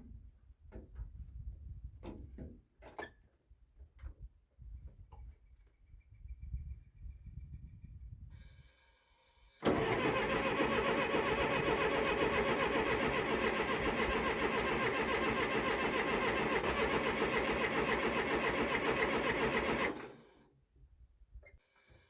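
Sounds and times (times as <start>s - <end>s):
diesel engine cranking on starter: 9.6s - 20.4s.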